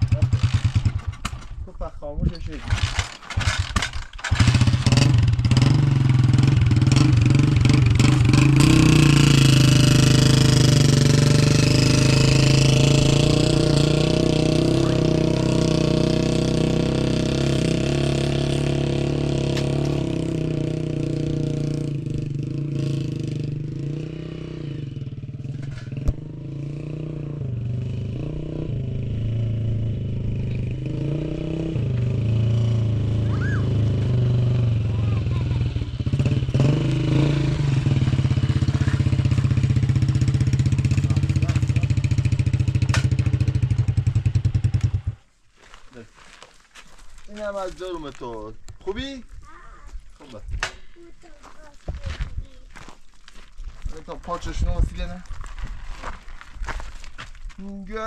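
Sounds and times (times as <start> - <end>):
engine running: 2.7 - 45.2.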